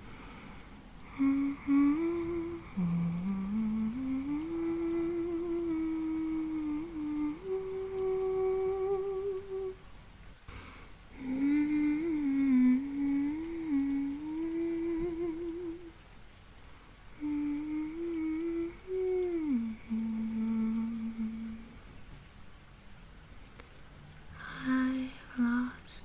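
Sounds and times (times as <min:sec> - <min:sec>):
woman humming a lullaby: 0:01.0 - 0:09.8, 0:11.1 - 0:16.0, 0:17.2 - 0:21.8, 0:24.4 - 0:26.0.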